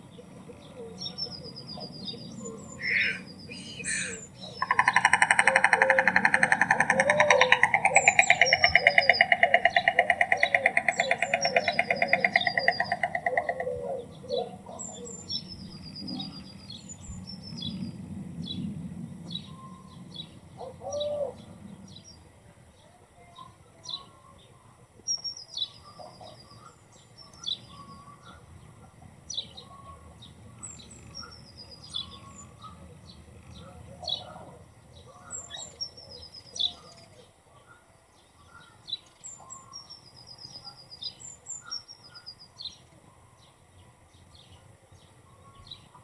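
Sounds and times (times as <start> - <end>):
songbirds chirping: 0.0 - 46.0
stork bill clattering: 4.6 - 13.3.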